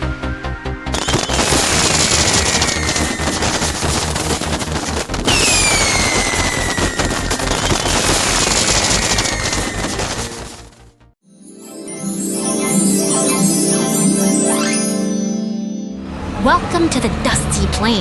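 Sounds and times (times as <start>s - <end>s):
falling firework whistles: 0.9s - 10.6s
fireworks crackling: 0.9s - 10.8s.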